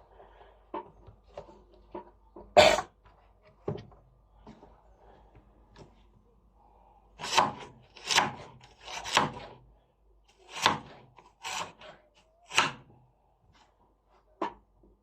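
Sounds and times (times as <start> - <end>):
knife slicing carrot on board: 7.2 - 9.5, 10.5 - 12.8.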